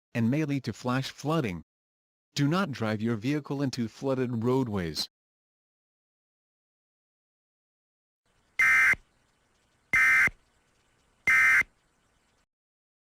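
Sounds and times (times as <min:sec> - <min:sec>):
digital data bursts screeching: 0:08.6 - 0:09.0, 0:10.0 - 0:10.4, 0:11.2 - 0:11.7.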